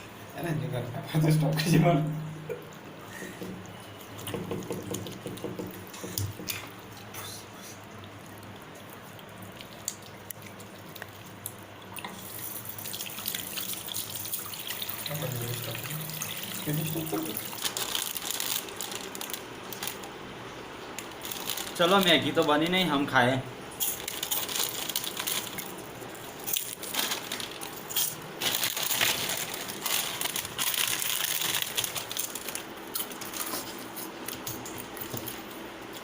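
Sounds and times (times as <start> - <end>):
water running into sink: 12.0 - 17.6.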